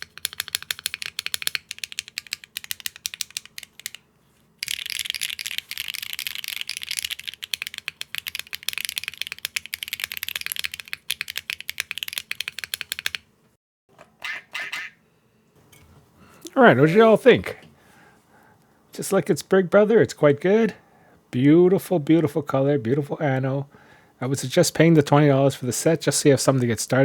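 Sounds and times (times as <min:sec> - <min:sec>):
fast mechanical keyboard typing: 0:00.0 - 0:04.0, 0:04.6 - 0:13.3.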